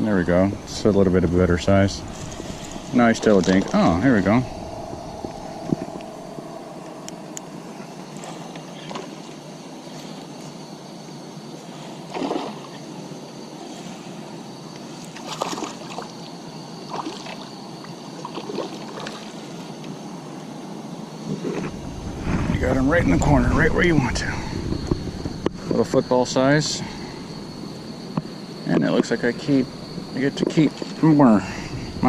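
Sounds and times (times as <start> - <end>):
water sloshing and splashing: 12.1 - 12.8, 15.1 - 16.1.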